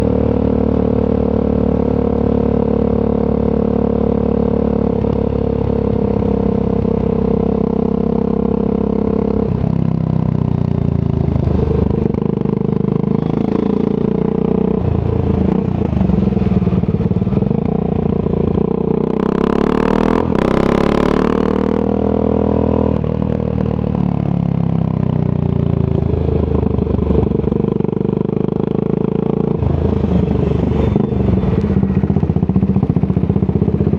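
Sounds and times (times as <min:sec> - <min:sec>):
motorcycle engine: 0:11.4 - 0:24.6.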